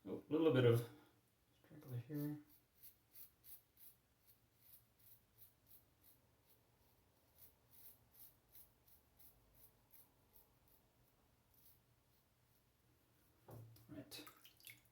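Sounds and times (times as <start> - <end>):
razor scraping stubble: 1.8 - 10.8.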